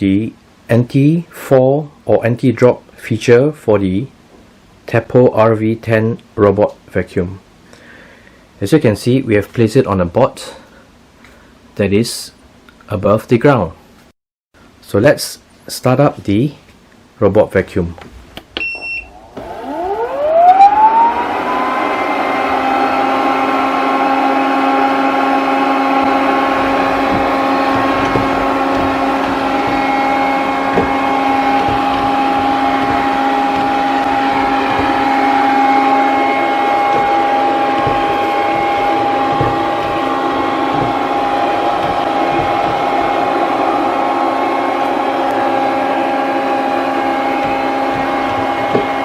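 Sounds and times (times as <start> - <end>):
robot vacuum motor whining: 19.3 - 49.0.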